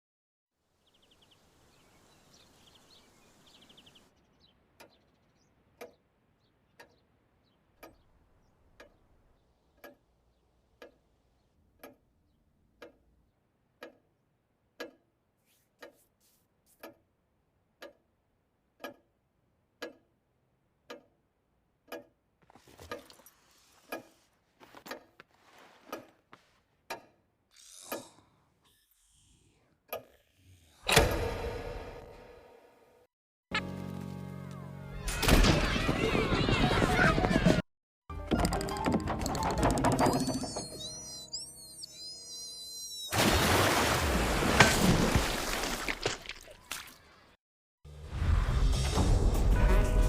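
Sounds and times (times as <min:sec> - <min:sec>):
clock ticking: 0:06.7 - 0:07.1, 0:07.8 - 0:09.0, 0:09.6 - 0:13.1, 0:13.7 - 0:15.2, 0:17.7 - 0:20.2, 0:20.8 - 0:22.3
faint chirps: 0:40.0 - 0:43.2.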